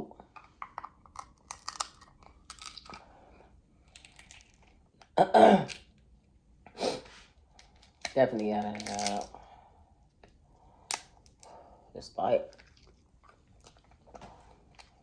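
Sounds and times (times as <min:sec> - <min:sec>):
chewing with crunches: 0:00.8 - 0:03.1, 0:12.5 - 0:15.0.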